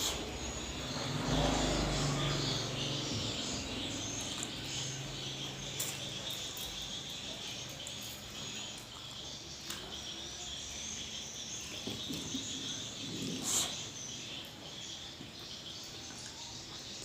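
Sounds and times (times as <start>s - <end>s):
insects chirring: 0.0s - 17.0s
chewing and eating: 4.0s - 10.8s.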